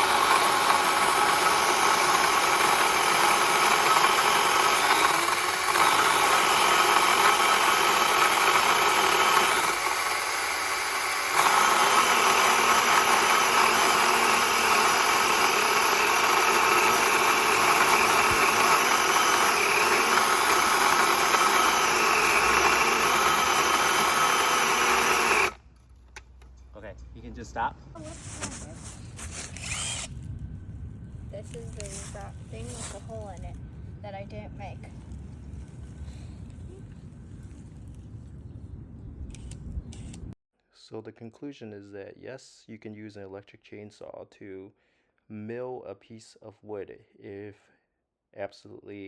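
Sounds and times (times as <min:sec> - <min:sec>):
battery chainsaw cutting log: 0:00.0 - 0:25.6, 0:29.5 - 0:30.2.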